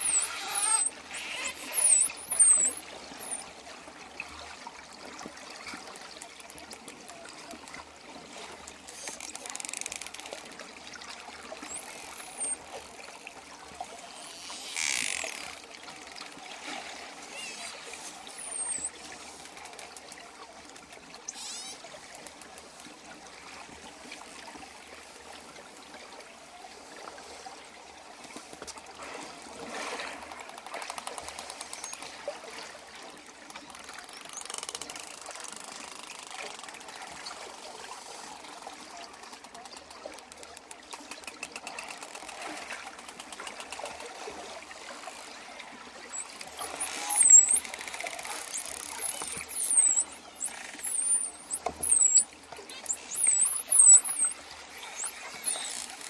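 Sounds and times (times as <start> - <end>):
dolphin clicks: 0.0 - 3.5, 8.5 - 10.6, 11.5 - 16.4, 17.1 - 23.0, 30.3 - 32.2, 32.8 - 37.3, 39.0 - 44.2, 46.1 - 56.0
dolphin whistles: 0.0 - 3.5, 17.2 - 19.0, 21.3 - 21.8, 46.1 - 56.0
water wash: 41.2 - 56.0.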